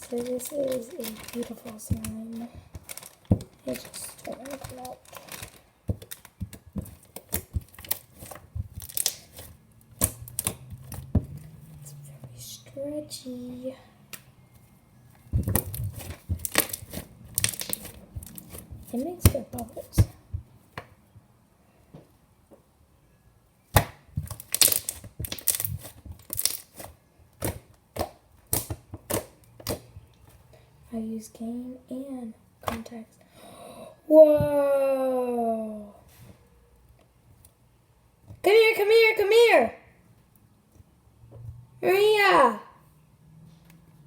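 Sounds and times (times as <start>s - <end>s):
slime squished by hand: 0.1s - 11.3s, 15.3s - 20.2s, 23.7s - 30.1s.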